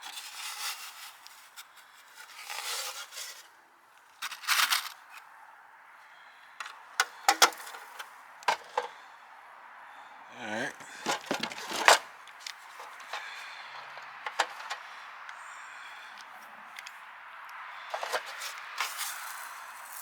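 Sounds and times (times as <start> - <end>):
hand tool scraping: 7.0 - 8.9, 10.8 - 15.0, 17.9 - 20.0.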